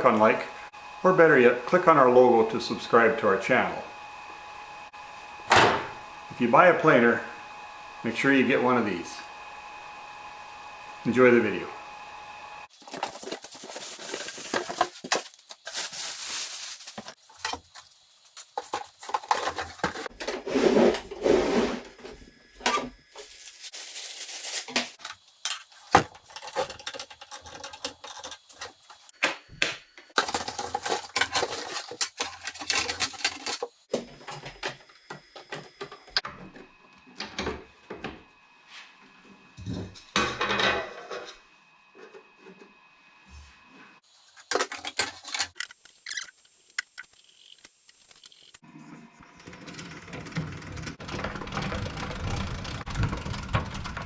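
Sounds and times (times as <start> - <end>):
packaging rustling: 12.7 - 20.2, 23.1 - 29.1, 30.2 - 33.9
clatter of parts being moved: 12.7 - 29.1, 30.2 - 36.2, 44.2 - 47.2.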